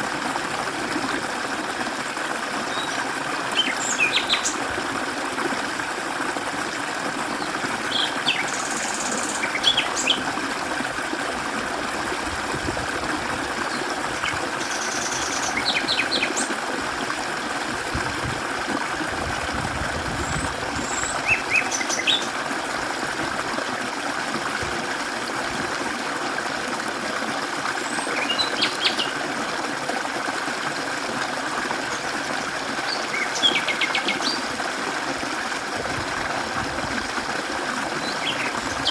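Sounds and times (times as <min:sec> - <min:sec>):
stream flowing over rocks: 0:00.0 - 0:38.9
small birds chirping: 0:03.6 - 0:04.6, 0:07.4 - 0:10.3, 0:13.7 - 0:16.5, 0:20.8 - 0:22.4, 0:28.0 - 0:29.2, 0:32.8 - 0:34.5, 0:38.0 - 0:38.9.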